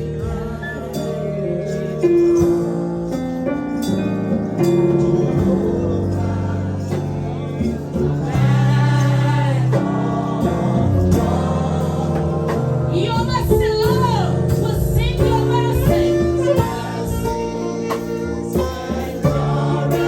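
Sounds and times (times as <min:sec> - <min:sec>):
held instrumental chords: 0:00.0 - 0:20.0.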